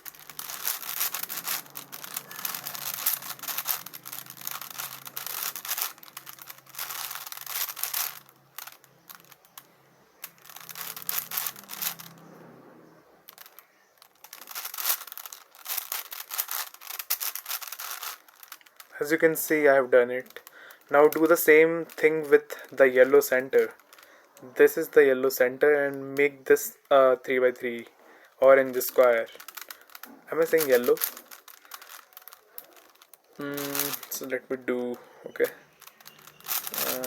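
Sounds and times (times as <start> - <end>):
puzzle cube layers clicking: 0.0 - 12.2, 13.3 - 19.6, 28.5 - 34.3, 35.7 - 37.0.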